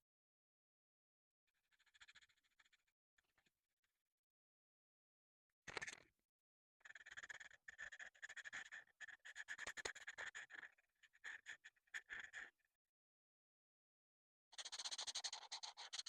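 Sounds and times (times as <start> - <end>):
coloring tool scratching on paper: 7.0 - 12.5, 14.6 - 16.0.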